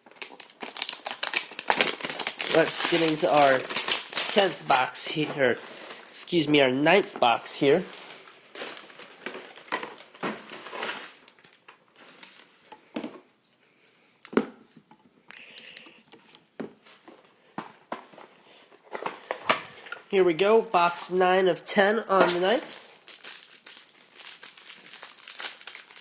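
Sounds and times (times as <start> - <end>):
cardboard and packaging crinkling: 0.0 - 6.1, 7.2 - 12.6, 22.2 - 26.0.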